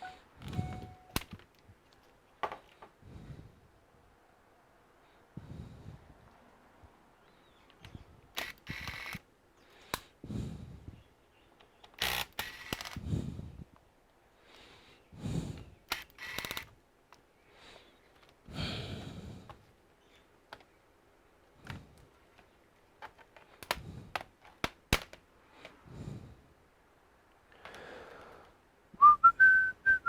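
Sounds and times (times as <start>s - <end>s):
sharp clicks: 7.7s - 9.2s, 11.6s - 13.0s, 15.9s - 17.2s, 23.6s - 25.2s
laptop parts and tools handled: 21.6s - 25.8s.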